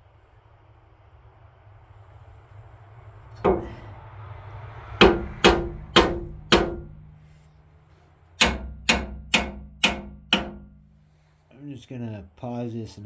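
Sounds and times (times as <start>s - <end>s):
hammer striking metal: 3.4s - 3.9s, 5.0s - 7.2s, 8.4s - 10.9s.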